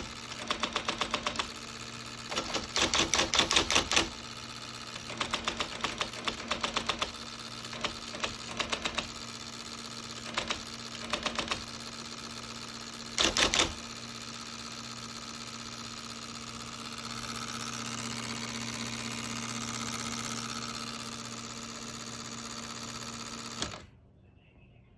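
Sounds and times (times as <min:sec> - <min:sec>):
typewriter mechanism clatter: 0:00.0 - 0:04.2, 0:04.8 - 0:09.2, 0:13.0 - 0:13.9, 0:22.7 - 0:23.9
sharp typing strikes: 0:00.0 - 0:23.9
typewriter motor humming: 0:00.0 - 0:23.9.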